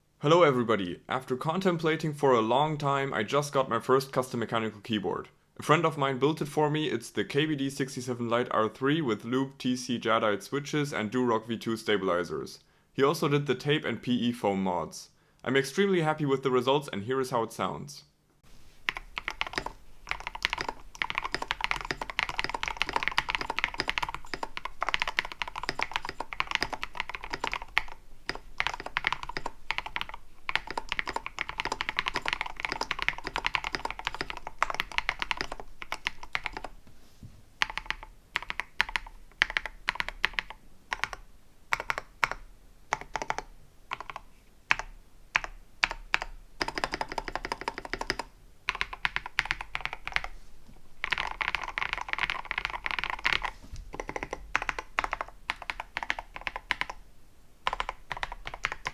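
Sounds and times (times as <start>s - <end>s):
mechanical keyboard typing: 18.8s - 36.8s, 37.6s - 50.4s, 51.0s - 57.0s, 57.6s - 58.9s.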